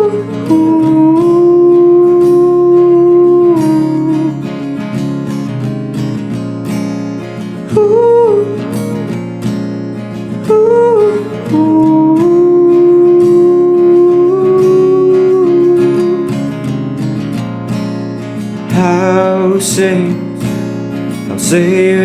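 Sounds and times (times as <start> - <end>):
melody line with long held note: 0.0 - 5.9, 7.7 - 9.3, 10.4 - 16.9
acoustic guitar strumming: 0.0 - 22.0.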